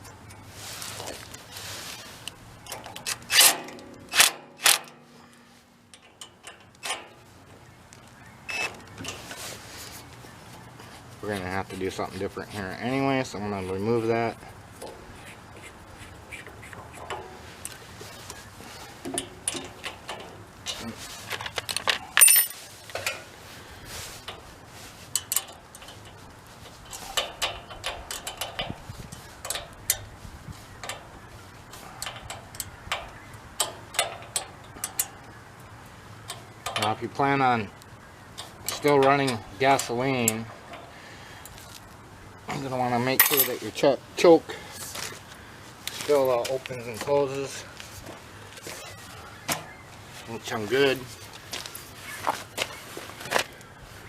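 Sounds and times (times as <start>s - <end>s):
hand tools clicking and knocking: 5.9s - 7.2s, 19.0s - 23.3s, 25.1s - 30.1s, 31.7s - 35.2s, 36.2s - 37.0s, 38.4s - 40.9s
small metal parts clinking: 19.1s - 23.2s, 43.2s - 43.6s.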